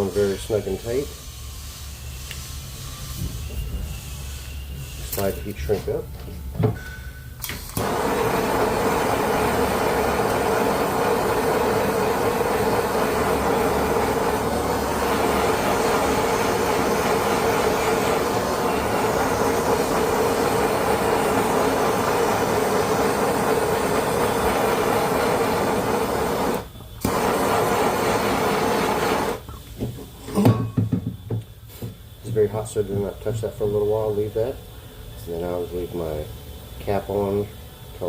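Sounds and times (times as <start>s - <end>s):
heat gun blowing: 7.5s - 29.6s.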